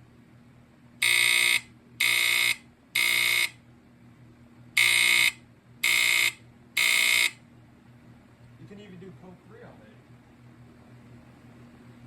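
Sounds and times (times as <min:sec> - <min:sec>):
smoke alarm harsh buzz: 0:01.0 - 0:03.6, 0:04.8 - 0:07.4.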